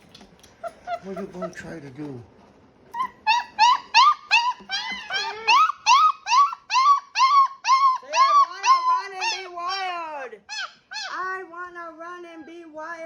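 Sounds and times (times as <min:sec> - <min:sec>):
puppy whining: 0:00.2 - 0:01.7, 0:02.9 - 0:11.3.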